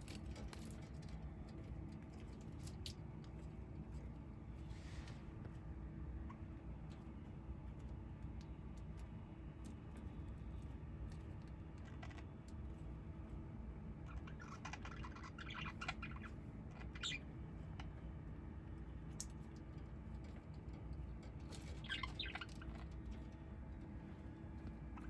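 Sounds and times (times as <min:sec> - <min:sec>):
steady low hum: 0:00.0 - 0:25.0
small bird chirping: 0:14.0 - 0:18.0, 0:21.4 - 0:23.4.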